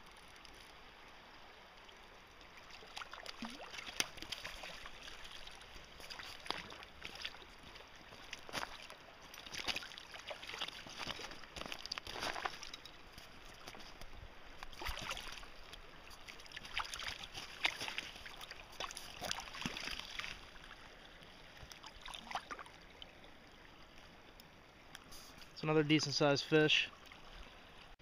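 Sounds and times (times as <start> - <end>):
creek water running: 0.0 - 28.0
fish splashing at surface: 14.7 - 15.5.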